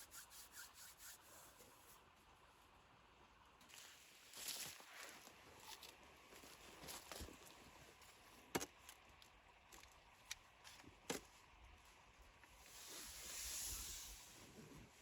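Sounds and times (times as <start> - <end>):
soft hiss: 11.4 - 15.0.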